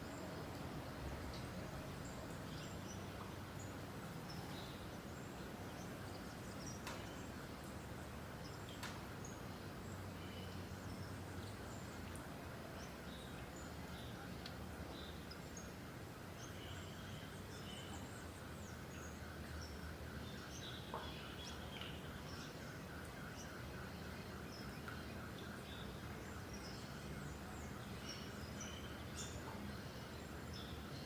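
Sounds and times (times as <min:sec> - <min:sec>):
steady background hiss: 0:00.0 - 0:31.0.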